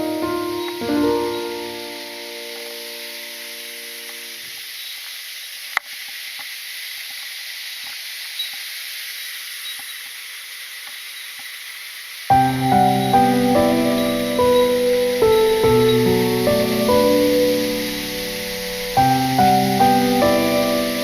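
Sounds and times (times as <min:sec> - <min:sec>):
small waterfall rushing: 0:00.0 - 0:21.0.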